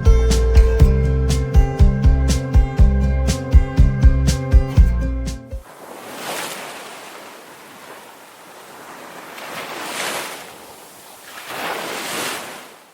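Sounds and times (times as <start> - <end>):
sea waves washing in: 5.6 - 12.9.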